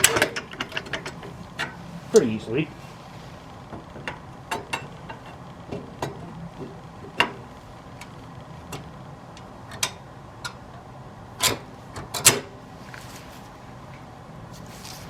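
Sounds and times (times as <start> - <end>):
hard parts clicking and knocking: 0.0 - 1.8.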